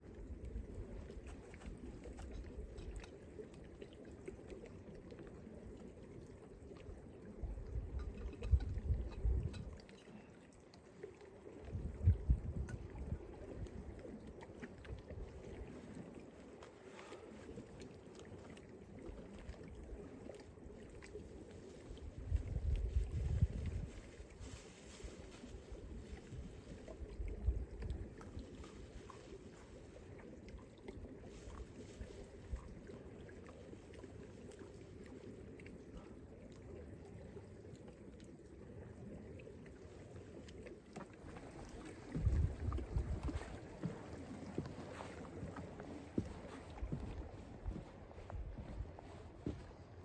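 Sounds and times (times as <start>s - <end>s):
stream running water: 0.0s - 50.0s
wind rumbling on microphone: 6.9s - 10.0s, 11.4s - 16.2s, 19.0s - 34.0s, 39.8s - 50.0s
wind buffeting microphone: 7.4s - 9.8s, 11.6s - 14.0s, 21.9s - 28.2s, 42.0s - 43.9s, 46.2s - 49.6s.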